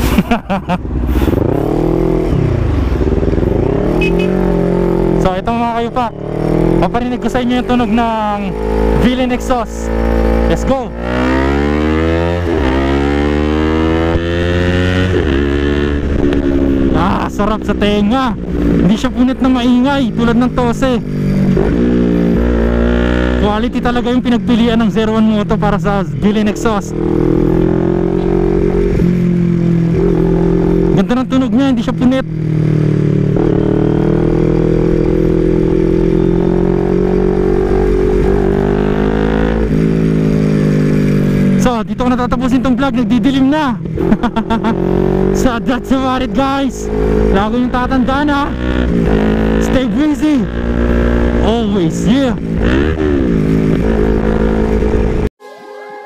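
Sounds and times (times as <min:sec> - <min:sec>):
motorcycle accelerating: 0:00.0 - 0:55.3.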